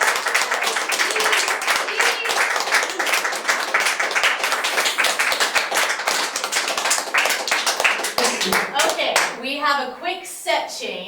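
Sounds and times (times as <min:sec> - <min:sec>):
audience clapping: 0:00.0 - 0:09.4
voices: 0:00.6 - 0:03.6.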